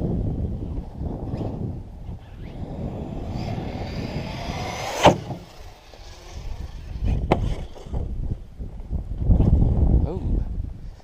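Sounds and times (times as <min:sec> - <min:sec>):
tyre noise: 0:01.1 - 0:08.5
electric motor whining: 0:01.3 - 0:07.8
loud landing impact: 0:02.6 - 0:05.7.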